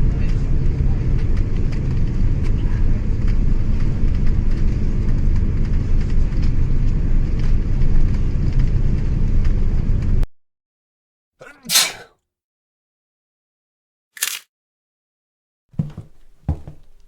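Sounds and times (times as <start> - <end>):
low engine-like rumble: 0.0 - 10.2.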